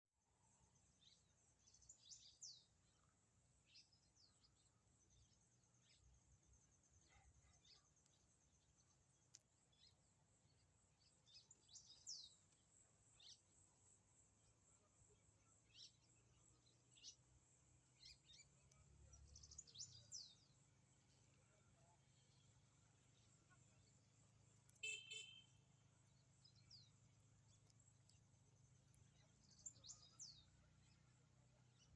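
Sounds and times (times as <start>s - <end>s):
faint bird chirps: 0.3s - 31.9s.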